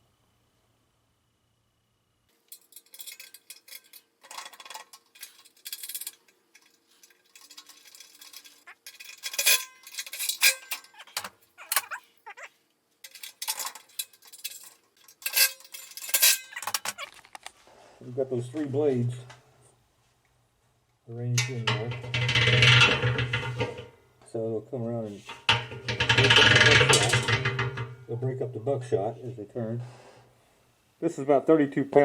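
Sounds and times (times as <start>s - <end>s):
metal clinks and clanks: 2.5s - 12.0s, 13.0s - 17.5s, 21.4s - 23.9s, 25.2s - 28.1s.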